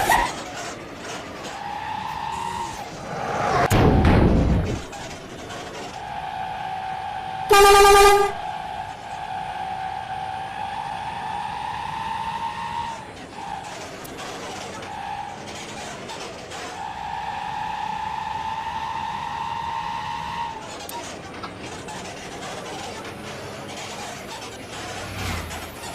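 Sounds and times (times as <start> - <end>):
bus air horn blast: 7.5 - 8.4.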